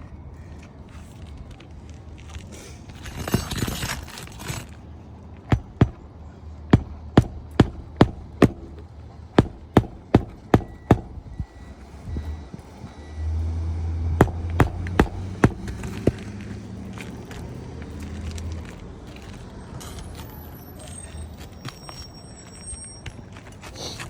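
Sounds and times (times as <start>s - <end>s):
hammer striking nails: 5.5s - 6.1s, 6.7s - 11.4s, 14.2s - 16.3s.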